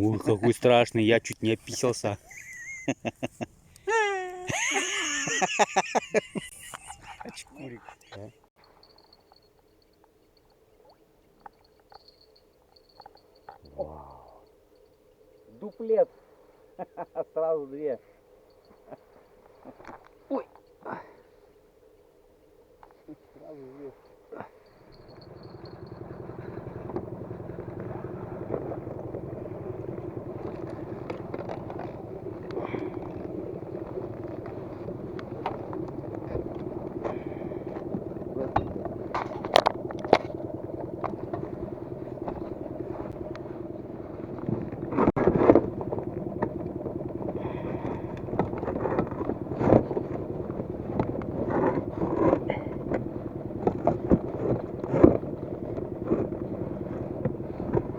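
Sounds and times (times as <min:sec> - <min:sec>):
motor running steadily: 0:04.5 - 0:05.6, 0:24.8 - 0:57.9.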